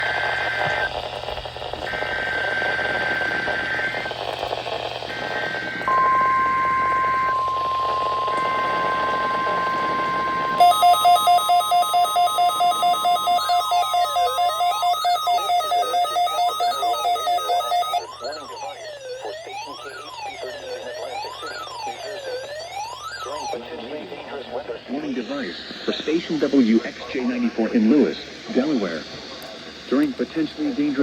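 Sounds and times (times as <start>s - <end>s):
steady warning alarm tone: 0.0s - 23.8s
digital data bursts: 0.0s - 27.4s
radio hiss: 0.0s - 31.0s
beeping electronic alarm: 5.1s - 23.6s
two-tone digital warble: 5.9s - 23.6s.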